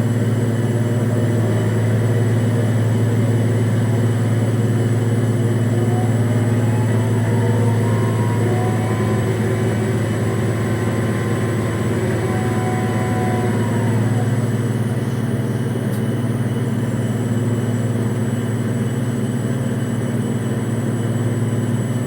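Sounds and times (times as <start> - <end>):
crane engine low drone: 0.0 - 22.0
faint high tone: 5.5 - 14.9.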